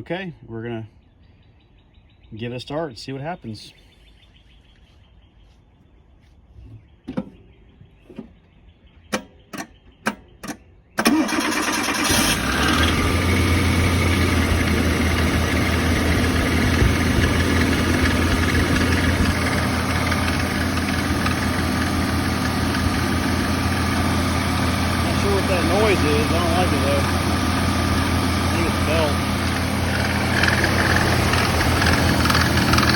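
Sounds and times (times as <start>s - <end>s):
car engine starting and idling: 11.0s - 32.9s
loose drive belt noise: 11.0s - 32.9s.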